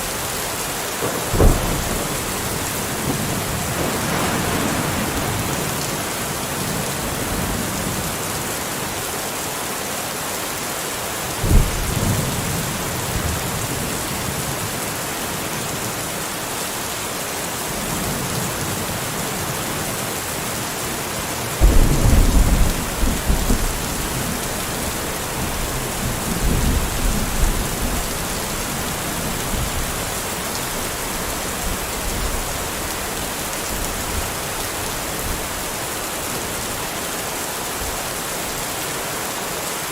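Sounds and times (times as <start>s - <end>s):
heavy rain: 0.0s - 39.9s
thunder clap: 1.0s - 7.9s, 21.6s - 30.0s
rumble of thunder: 1.0s - 8.2s, 11.4s - 14.0s, 21.6s - 30.2s.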